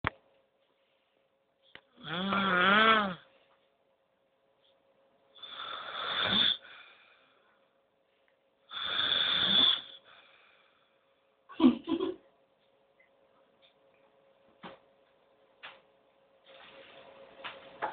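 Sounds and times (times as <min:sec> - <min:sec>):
person snoring heavily: 0:02.0 - 0:03.3, 0:05.4 - 0:07.3, 0:08.7 - 0:10.6.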